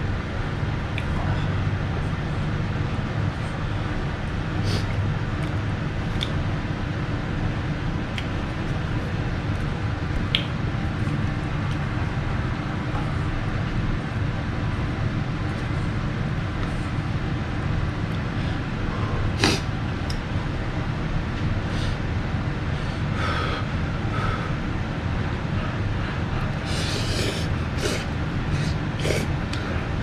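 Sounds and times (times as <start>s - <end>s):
steady low rumble: 0.0s - 30.0s.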